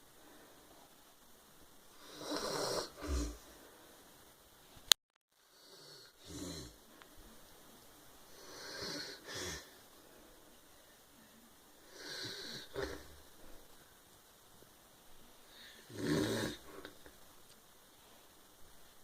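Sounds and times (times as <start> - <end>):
man snoring: 2.0 - 3.5, 5.5 - 6.8, 8.3 - 9.7, 11.8 - 13.2, 15.6 - 17.0.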